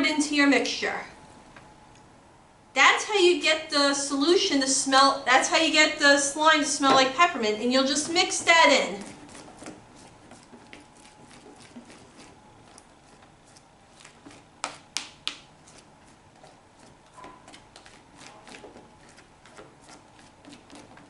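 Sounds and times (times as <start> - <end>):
utensil scraping slime in bowl: 6.7 - 21.0.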